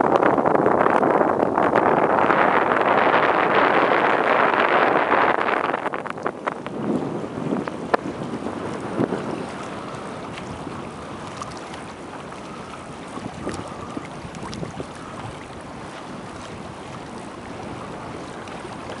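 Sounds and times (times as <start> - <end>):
gusty wind buffeting microphone: 0.0 - 19.0
water lapping against quay: 0.0 - 19.0.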